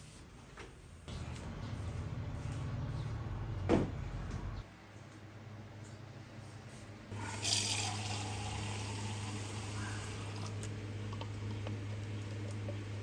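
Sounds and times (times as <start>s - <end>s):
water running: 7.2s - 10.6s.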